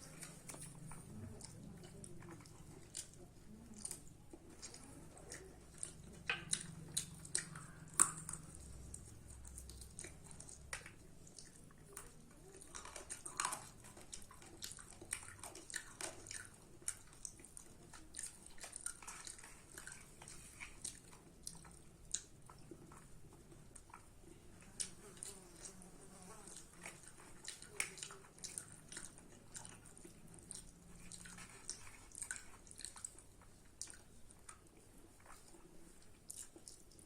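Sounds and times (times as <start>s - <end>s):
mouth clicks and smacks: 0.0s - 25.7s
person chewing food: 0.0s - 37.0s.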